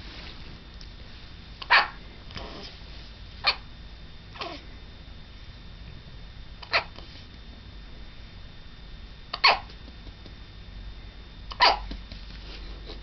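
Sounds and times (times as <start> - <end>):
baby hiccuping: 9.4 - 9.7, 11.6 - 11.9.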